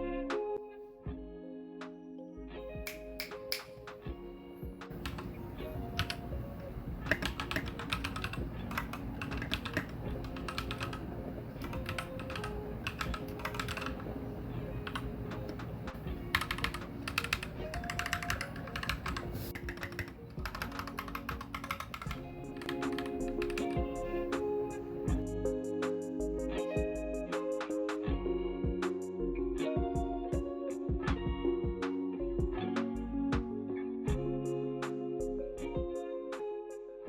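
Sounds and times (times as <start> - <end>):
background music: 0.0 - 37.0
mechanical keyboard typing: 4.9 - 24.8.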